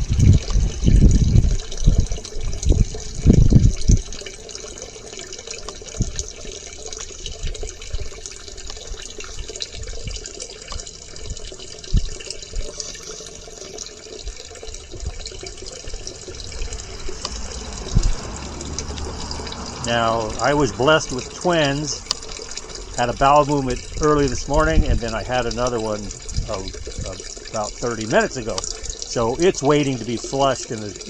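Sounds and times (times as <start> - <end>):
water running and trickling: 0.0 - 31.0
short low thumps: 16.1 - 21.2.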